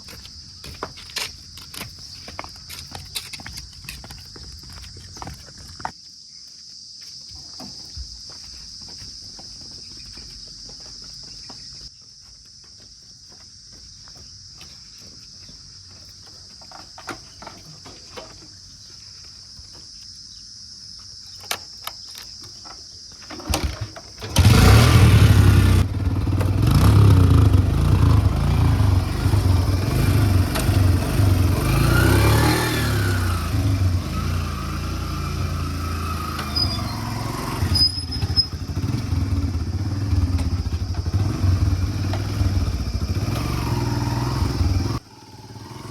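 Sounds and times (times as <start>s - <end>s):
heavy diesel engine running: 24.2s - 45.0s.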